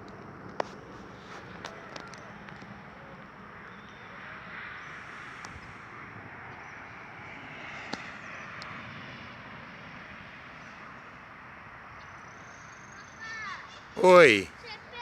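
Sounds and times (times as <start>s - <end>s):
outdoor background hiss: 14.0s - 14.5s.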